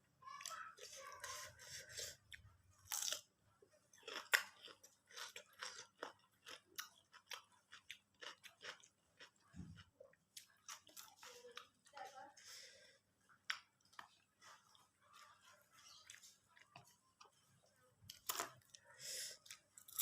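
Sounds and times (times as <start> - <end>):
crisp crunchy chewing: 0.5 - 3.3, 3.9 - 11.8.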